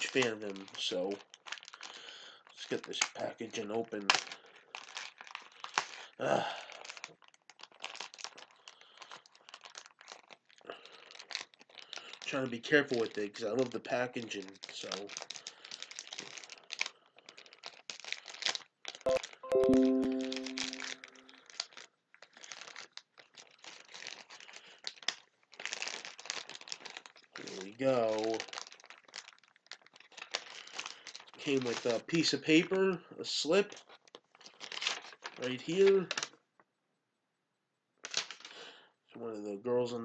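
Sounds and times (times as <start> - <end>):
packaging crinkling: 0.0 - 32.7, 33.7 - 36.4, 38.0 - 38.7
brief voice: 19.1 - 21.2
ringing chord: 19.1 - 21.3.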